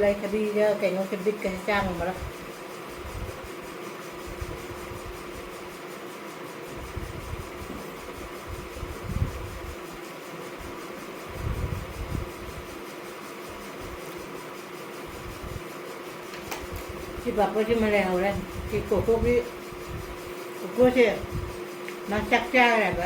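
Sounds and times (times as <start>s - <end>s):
electric fan humming: 0.0s - 23.0s
soft low thumps: 11.3s - 12.7s, 20.9s - 23.0s.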